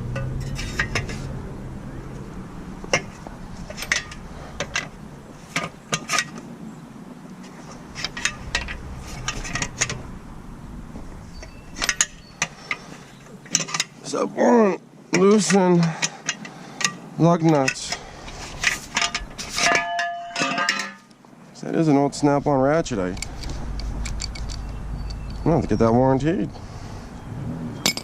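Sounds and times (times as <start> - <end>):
lug nuts clinking: 0.0 - 1.3, 2.1 - 6.5, 7.4 - 10.1, 11.2 - 14.0, 15.1 - 21.2, 23.0 - 25.9.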